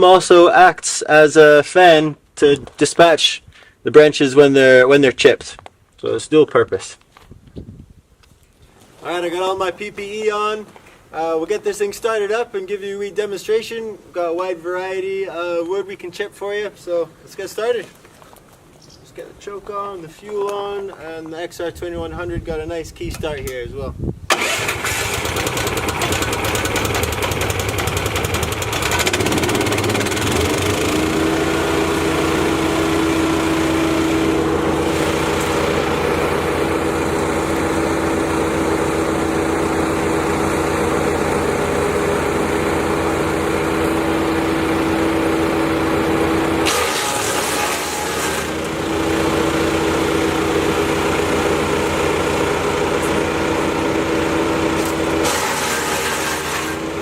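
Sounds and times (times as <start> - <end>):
wood chipper engine running: 24.3 - 57.0.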